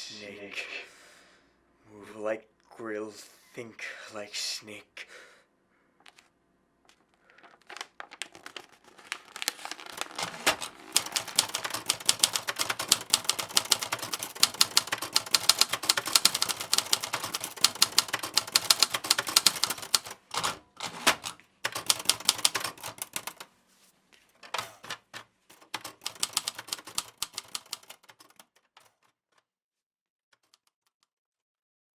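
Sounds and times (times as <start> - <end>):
typewriter keys clattering: 7.4 - 23.4, 24.5 - 29.1.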